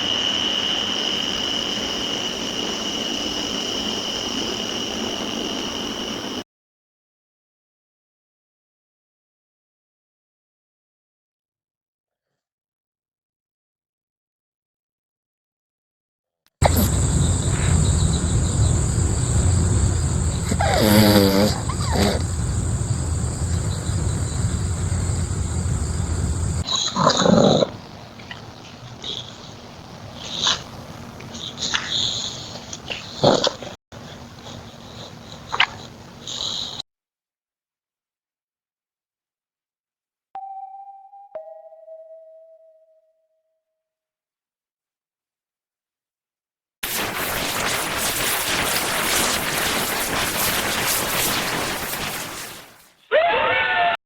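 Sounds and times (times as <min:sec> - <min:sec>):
high steady whine: 0:00.0 - 0:06.4, 0:16.6 - 0:26.6, 0:46.8 - 0:52.8
steady background hiss: 0:00.0 - 0:06.4, 0:16.6 - 0:26.9
steady low rumble: 0:16.6 - 0:26.6.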